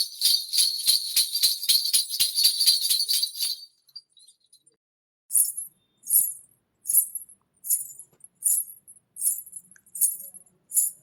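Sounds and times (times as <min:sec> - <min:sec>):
ankle bells jingling: 0:00.0 - 0:04.7.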